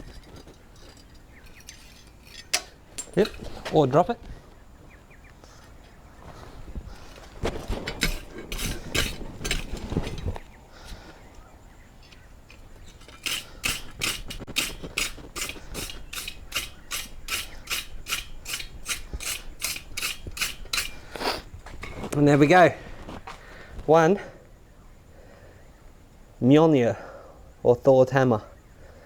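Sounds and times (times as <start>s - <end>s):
rasp scraping steel: 0.0s - 4.2s, 7.0s - 11.0s, 12.0s - 23.2s.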